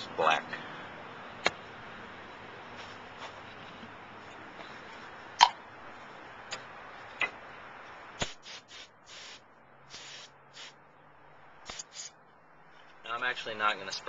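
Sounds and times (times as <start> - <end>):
aerosol can spraying: 8.2 - 10.8, 11.6 - 12.1.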